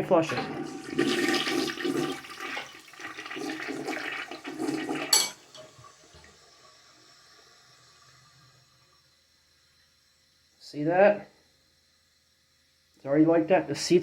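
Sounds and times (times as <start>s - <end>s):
toilet flush water rushing: 0.0s - 10.5s
faint water trickle: 5.1s - 14.0s.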